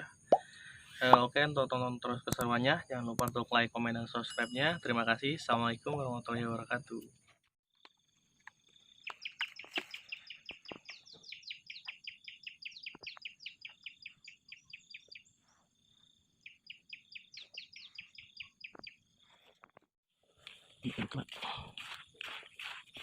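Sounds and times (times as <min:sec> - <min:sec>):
bird chirping high: 0:09.0 - 0:15.3, 0:16.4 - 0:19.0.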